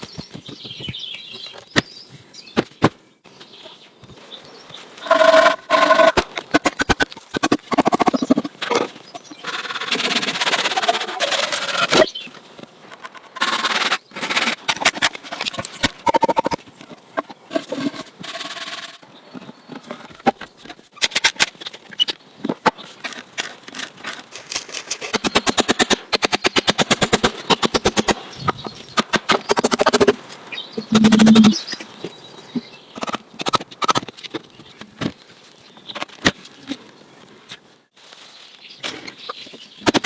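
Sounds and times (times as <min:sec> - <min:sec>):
fast even strokes on wood: 0:05.0 - 0:06.2, 0:09.4 - 0:12.1, 0:13.3 - 0:16.6, 0:17.5 - 0:19.0
scraping on wood: 0:05.0 - 0:12.1, 0:12.9 - 0:20.6.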